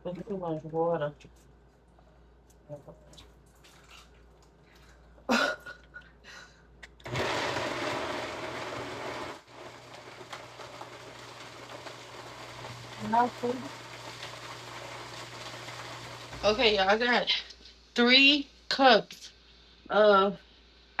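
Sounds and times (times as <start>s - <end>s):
kitchen blender running: 7.0s - 17.1s.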